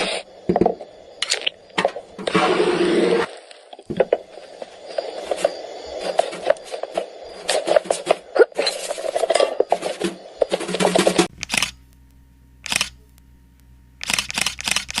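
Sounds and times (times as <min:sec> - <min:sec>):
camera shutter clicks: 0:11.4 - 0:11.8, 0:12.6 - 0:13.0, 0:14.0 - 0:15.0.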